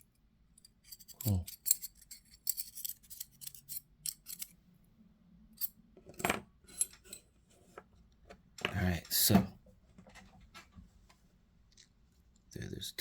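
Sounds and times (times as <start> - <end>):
small metal parts clinking: 0.6 - 4.5, 5.6 - 7.2.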